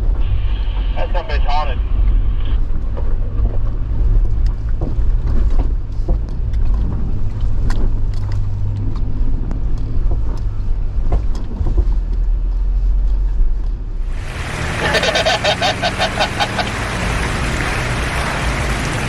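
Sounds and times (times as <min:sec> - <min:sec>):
car engine at low revs: 0:00.0 - 0:19.0
knocks and clunks from suspension: 0:02.8 - 0:08.8.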